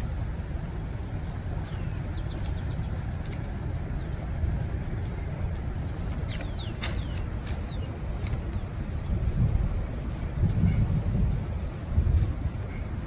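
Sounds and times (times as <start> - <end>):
birds chirping and whistling: 1.3 - 4.2, 5.8 - 9.1.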